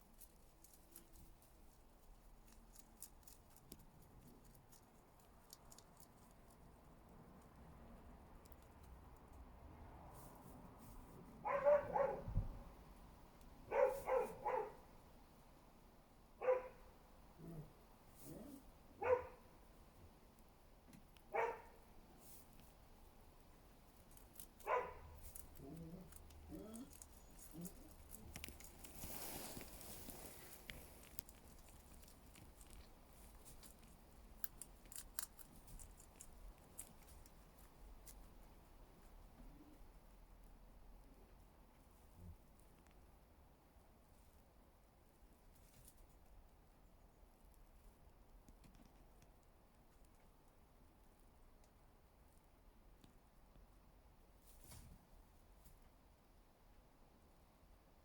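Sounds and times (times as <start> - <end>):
rabbit chewing leaves: 0.0 - 12.2, 13.2 - 14.9, 15.5 - 57.7
dog barking: 11.4 - 12.3, 13.7 - 14.8, 16.4 - 16.9, 19.0 - 19.5, 21.3 - 21.8, 24.6 - 25.2.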